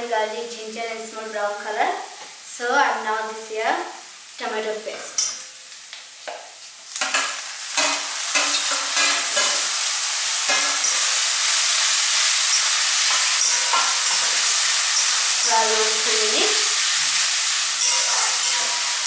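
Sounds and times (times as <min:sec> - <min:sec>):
food sizzling in oil: 0:01.0 - 0:19.0
spoon scraping and knocking pan: 0:07.0 - 0:09.7, 0:10.4 - 0:19.0.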